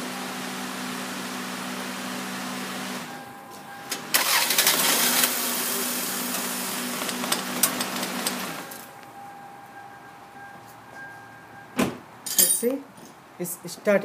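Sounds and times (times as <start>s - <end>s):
car engine cranking and running: 3.8s - 8.9s.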